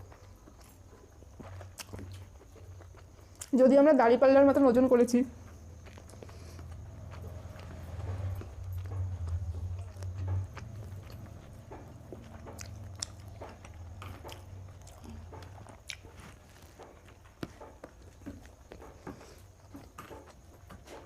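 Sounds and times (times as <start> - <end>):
chewing and biting: 0.0 - 3.6, 5.4 - 21.0
low hum: 5.3 - 20.3.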